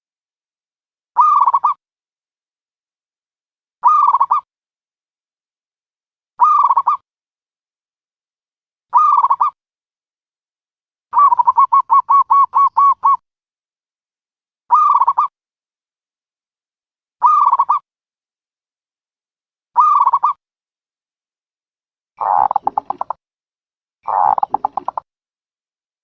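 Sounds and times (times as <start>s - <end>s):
dove cooing: 11.2s - 13.2s, 22.2s - 23.1s, 24.1s - 25.0s.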